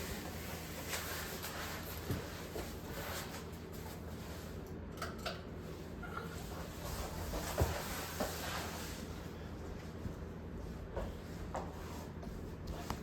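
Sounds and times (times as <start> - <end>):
ceiling fan running: 0.0 - 13.0.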